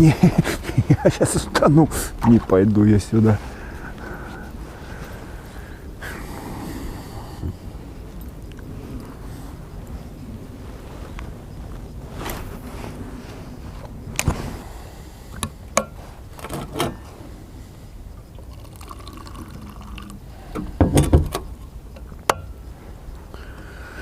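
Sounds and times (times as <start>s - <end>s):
hot drink poured into cup: 18.4s - 20.3s.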